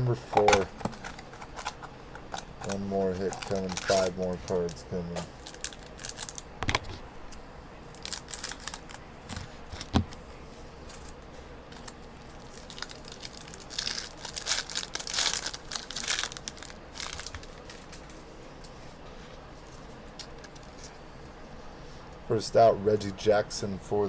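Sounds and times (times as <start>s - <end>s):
packaging crinkling and tearing: 0.4s - 6.5s, 7.9s - 10.1s, 10.9s - 18.2s.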